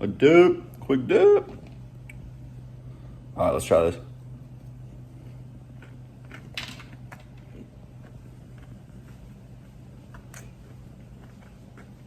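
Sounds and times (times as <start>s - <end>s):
low room hum: 0.0s - 12.0s
person chewing: 5.2s - 12.0s.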